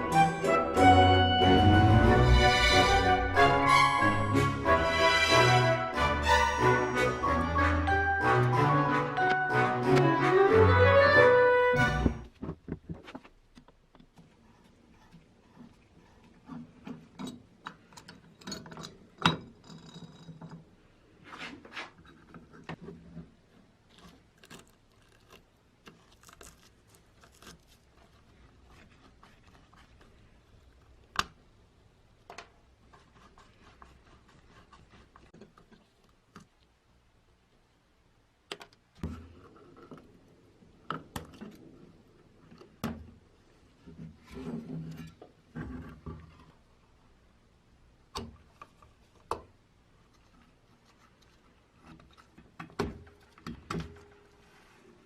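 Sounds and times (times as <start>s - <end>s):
metal parts and tools clicking: 16.8s - 20.7s.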